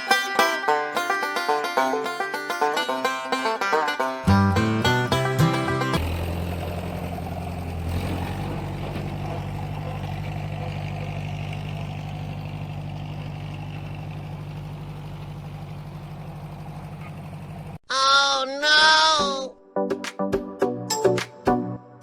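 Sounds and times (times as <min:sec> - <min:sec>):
engine idling: 0:04.2 - 0:17.8.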